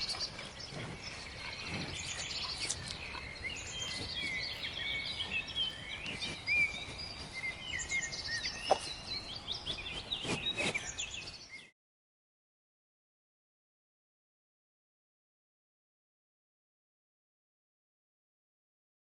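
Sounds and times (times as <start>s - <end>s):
small birds chirping: 0.0s - 11.7s.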